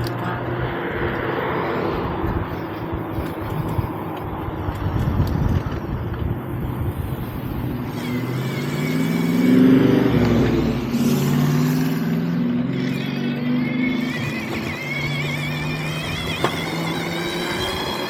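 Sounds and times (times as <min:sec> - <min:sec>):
motor vehicle passing: 0:00.0 - 0:18.0
road rumble while riding: 0:00.0 - 0:18.0
wind: 0:00.0 - 0:18.0.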